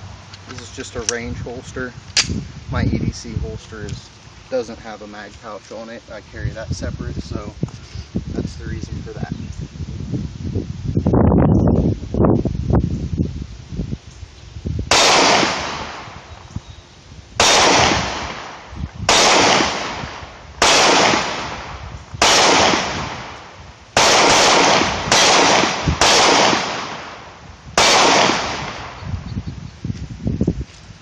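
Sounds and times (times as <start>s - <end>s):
pistol shots with echo: 14.9s - 16.2s, 17.4s - 29.0s.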